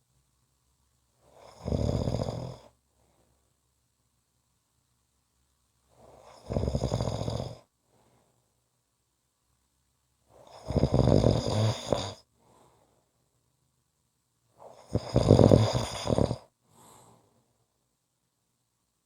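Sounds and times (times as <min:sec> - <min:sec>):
person snoring: 0:01.4 - 0:02.7, 0:06.2 - 0:07.7, 0:10.4 - 0:12.2, 0:14.7 - 0:16.5.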